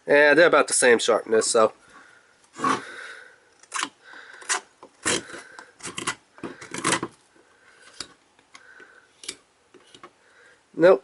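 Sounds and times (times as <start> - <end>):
knife scraping wood: 3.6 - 7.2.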